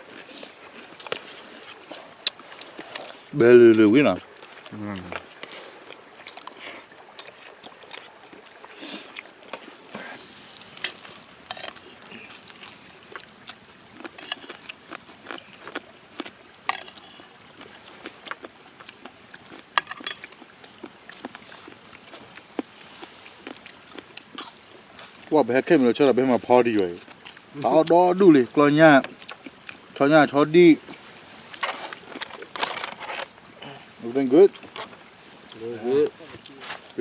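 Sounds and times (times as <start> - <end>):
utensils clinking against dishes: 16.7 - 17.2.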